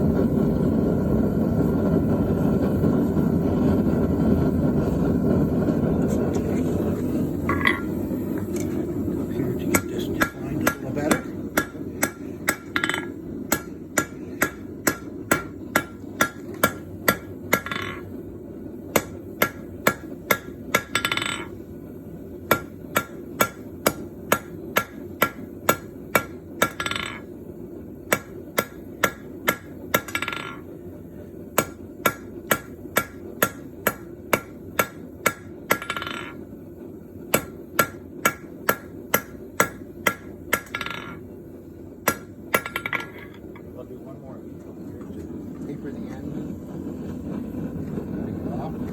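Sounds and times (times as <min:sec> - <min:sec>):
steady low hum: 0:00.0 - 0:48.9
hammer striking metal on anvil: 0:07.5 - 0:08.0, 0:09.6 - 0:18.1, 0:18.9 - 0:21.6, 0:22.5 - 0:27.3, 0:28.1 - 0:30.7, 0:31.6 - 0:36.4, 0:37.3 - 0:41.3, 0:42.0 - 0:43.7.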